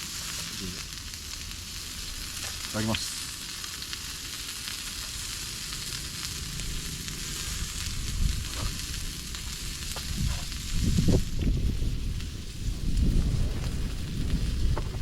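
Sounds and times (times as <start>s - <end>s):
meat sizzling in a frying pan: 0.0s - 15.0s
wind rumble on microphone: 6.5s - 15.0s.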